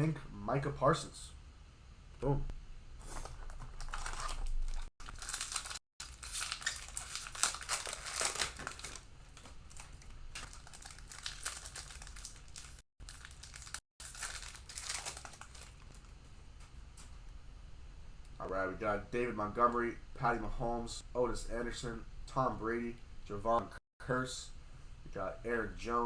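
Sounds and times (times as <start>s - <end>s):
plastic wrappers crinkling and tearing: 3.2s - 16.2s.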